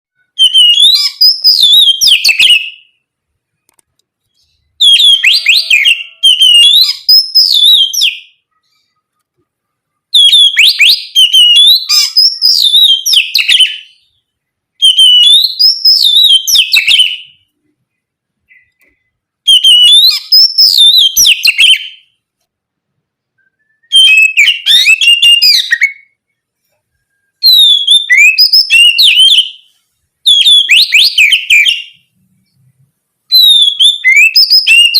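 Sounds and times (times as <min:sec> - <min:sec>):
bird singing whistled song: 0:00.2 - 0:03.0, 0:04.3 - 0:08.9, 0:10.1 - 0:14.2, 0:14.8 - 0:17.4, 0:18.5 - 0:22.1, 0:23.4 - 0:26.2, 0:27.0 - 0:32.7, 0:33.3 - 0:34.9.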